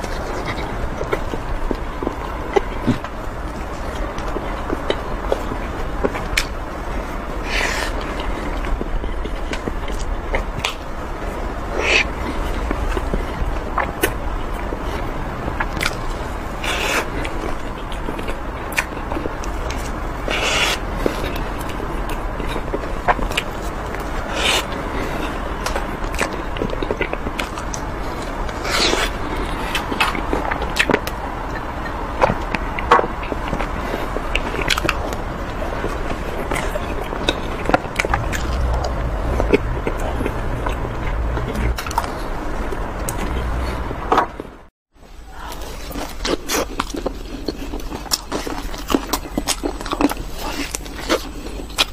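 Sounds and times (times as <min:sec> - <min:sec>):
chewing and mouth sounds: 0:00.0 - 0:44.4, 0:45.4 - 0:51.9
low rumble: 0:37.3 - 0:44.7
crackling bursts: 0:37.7 - 0:44.2
person chewing chocolate: 0:45.9 - 0:51.9.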